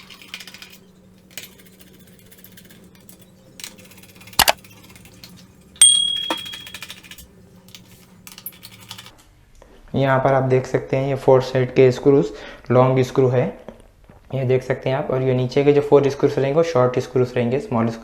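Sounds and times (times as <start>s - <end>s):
metal part clinking on hard surface: 0.0s - 8.8s.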